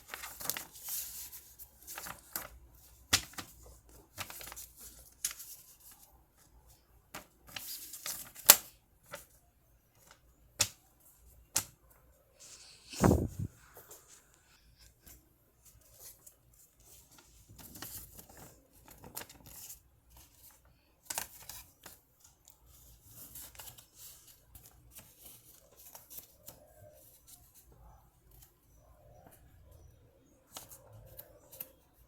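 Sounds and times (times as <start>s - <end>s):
paper rustling and crinkling: 0.0s - 6.5s, 12.4s - 14.4s, 15.0s - 27.6s.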